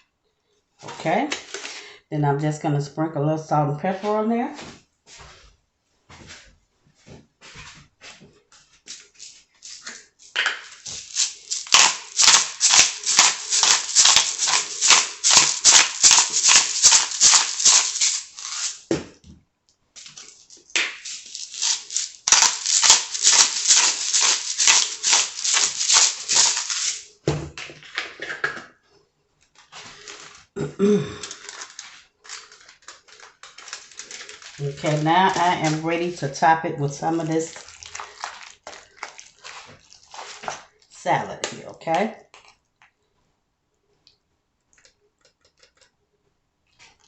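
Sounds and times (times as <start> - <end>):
handling noises: 7.0 - 19.4, 20.0 - 28.1, 31.2 - 36.4, 37.0 - 41.7
salt and pepper dispensers rattling: 9.2 - 18.9, 20.0 - 27.1, 31.2 - 42.5.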